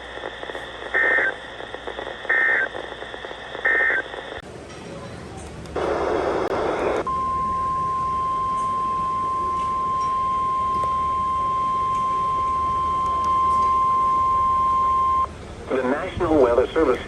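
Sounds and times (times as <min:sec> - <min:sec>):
steady warning alarm tone: 0:07.0 - 0:15.3.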